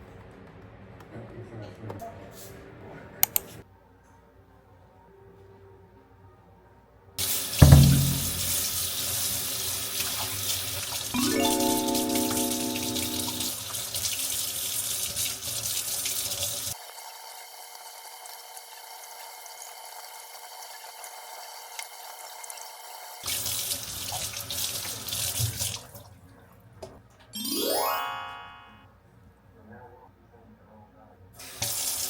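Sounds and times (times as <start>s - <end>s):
tap water running into sink: 7.2s - 11.0s.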